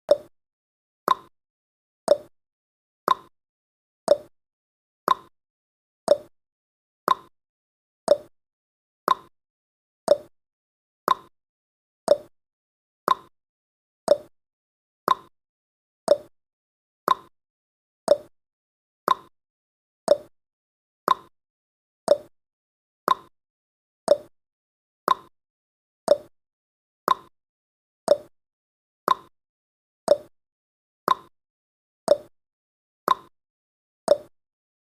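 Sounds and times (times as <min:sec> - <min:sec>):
timer ticking: 0:00.1 - 0:00.3, 0:01.1 - 0:01.3, 0:02.1 - 0:02.3, 0:03.1 - 0:03.3, 0:04.1 - 0:04.3, 0:05.1 - 0:05.3, 0:06.1 - 0:06.3, 0:07.1 - 0:07.3, 0:08.1 - 0:08.3, 0:09.1 - 0:09.3, 0:10.1 - 0:10.3, 0:11.1 - 0:11.3, 0:12.1 - 0:12.3, 0:13.1 - 0:13.3, 0:14.1 - 0:14.3, 0:15.1 - 0:15.3, 0:16.1 - 0:16.3, 0:17.1 - 0:17.3, 0:18.1 - 0:18.3, 0:19.1 - 0:19.3, 0:20.1 - 0:20.3, 0:21.1 - 0:21.3, 0:22.1 - 0:22.3, 0:23.1 - 0:23.3, 0:24.1 - 0:24.3, 0:25.1 - 0:25.3, 0:26.1 - 0:26.3, 0:27.1 - 0:27.3, 0:28.1 - 0:28.3, 0:29.1 - 0:29.3, 0:30.1 - 0:30.3, 0:31.1 - 0:31.3, 0:32.1 - 0:32.3, 0:33.1 - 0:33.3, 0:34.1 - 0:34.3.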